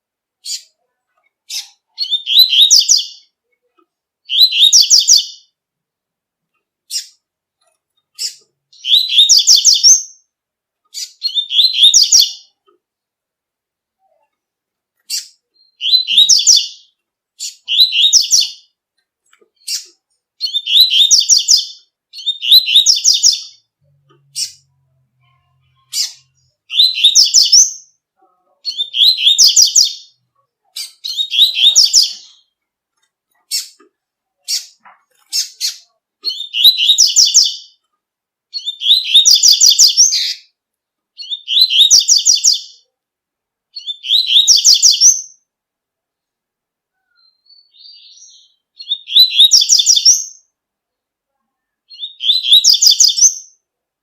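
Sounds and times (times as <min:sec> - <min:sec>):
bird singing high phrases: 0:00.4 - 0:03.6, 0:04.2 - 0:05.6, 0:06.8 - 0:07.2, 0:08.0 - 0:12.7, 0:15.0 - 0:18.8, 0:19.5 - 0:32.6, 0:33.4 - 0:33.8, 0:34.4 - 0:37.9, 0:38.5 - 0:40.6, 0:41.2 - 0:42.9, 0:43.7 - 0:45.5, 0:46.9 - 0:50.6, 0:51.6 - 0:53.7.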